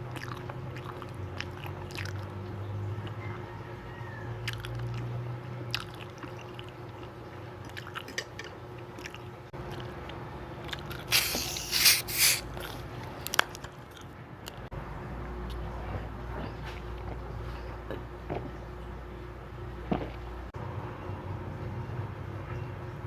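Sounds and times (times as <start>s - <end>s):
biting and chewing: 0.0s - 3.2s, 4.4s - 14.7s.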